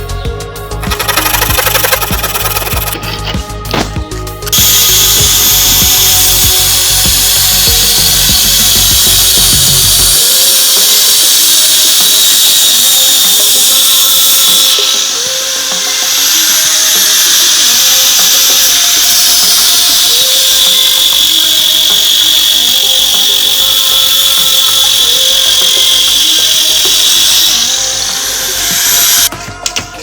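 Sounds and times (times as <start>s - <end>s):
background music: 0.0s - 10.1s, 27.8s - 30.0s
wood router whining: 0.8s - 3.8s, 4.4s - 29.3s.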